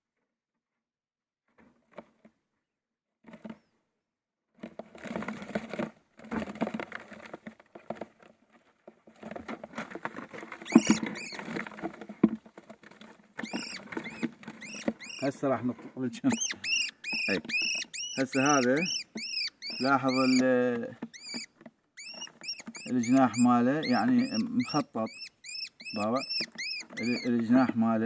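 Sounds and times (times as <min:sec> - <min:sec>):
birds fluttering in a bucket: 0:04.6 - 0:28.0
sharp bird chirps: 0:10.7 - 0:11.5, 0:13.4 - 0:15.4, 0:16.3 - 0:20.5, 0:21.1 - 0:27.4.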